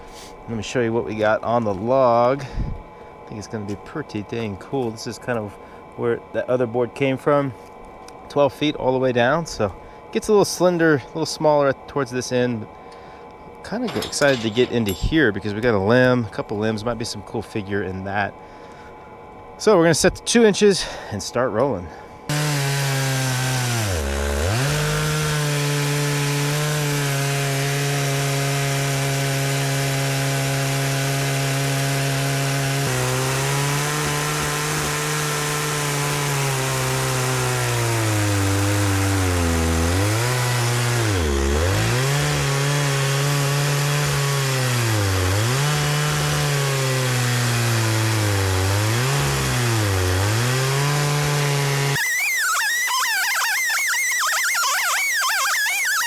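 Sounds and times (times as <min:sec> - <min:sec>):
chainsaw cutting log: 0:22.3 - 0:56.0.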